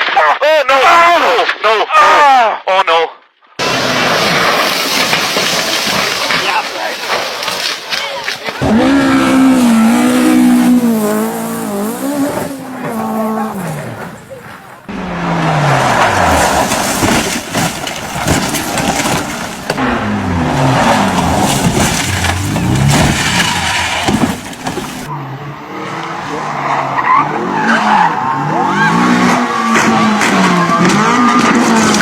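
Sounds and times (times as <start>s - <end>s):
tyre and road noise: 3.6s - 32.0s
tyres squealing: 5.5s - 32.0s
racing car engine revving: 8.6s - 32.0s.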